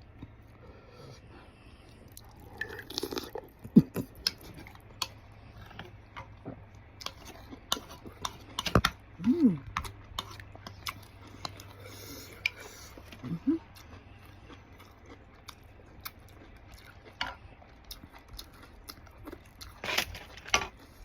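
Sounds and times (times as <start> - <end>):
person chewing noodles: 0.0 - 21.0
person humming: 9.2 - 9.7, 13.2 - 13.7.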